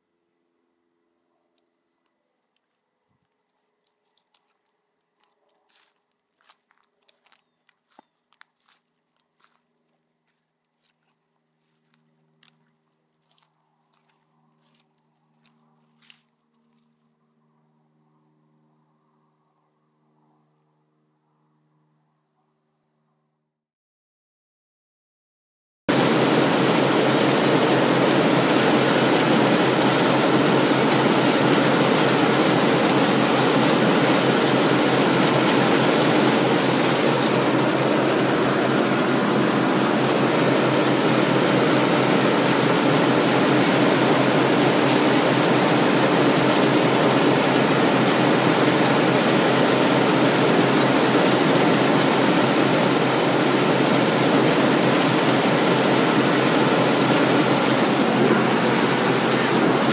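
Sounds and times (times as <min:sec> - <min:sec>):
faint steady hum: 0:00.0 - 0:06.2, 0:09.4 - 0:23.5
combine harvester running: 0:25.9 - 0:59.9.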